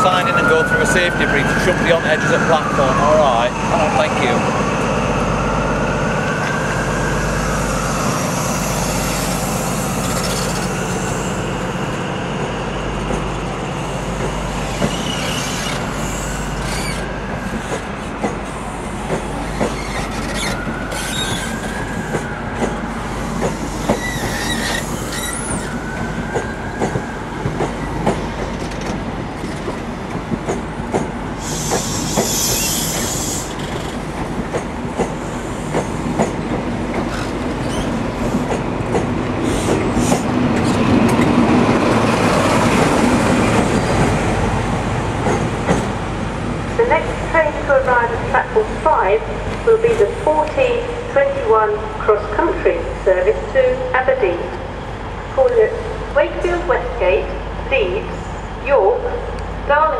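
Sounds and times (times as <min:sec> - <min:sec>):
train diesel engine drone: 0:00.0 - 0:59.9
train wheels squealing: 0:08.4 - 0:11.4, 0:14.6 - 0:18.7, 0:19.4 - 0:22.2, 0:23.1 - 0:27.2, 0:31.4 - 0:34.0, 0:37.1 - 0:38.0
wheels clicking over rail joints: 0:14.2 - 0:41.4.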